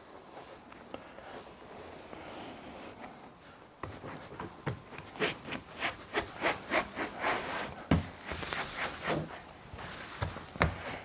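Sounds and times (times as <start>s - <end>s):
hands rubbing a panel: 3.9s - 10.9s.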